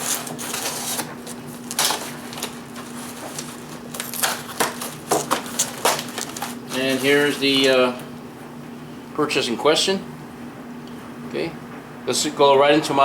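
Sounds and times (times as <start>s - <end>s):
cardboard packaging rustling: 0.0s - 8.1s.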